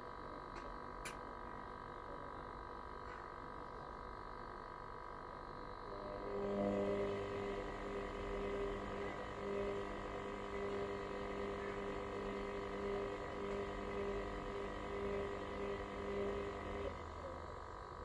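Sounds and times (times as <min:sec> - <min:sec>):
washer-dryer motor hum: 0:00.0 - 0:18.0
high-pitched whine: 0:05.8 - 0:18.0.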